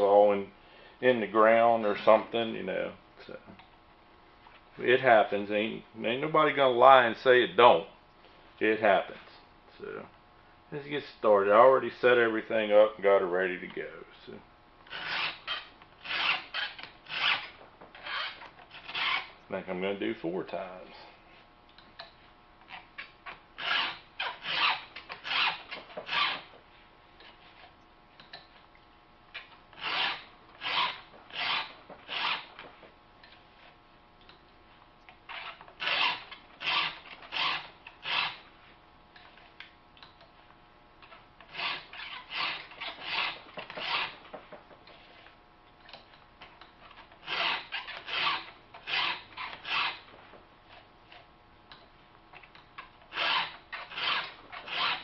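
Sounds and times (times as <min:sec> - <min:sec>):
file rasping on saw chain: 0:14.9 - 0:19.3, 0:23.6 - 0:26.5, 0:29.8 - 0:32.6, 0:35.3 - 0:38.4, 0:41.5 - 0:44.3, 0:47.2 - 0:50.1, 0:53.1 - 0:55.0.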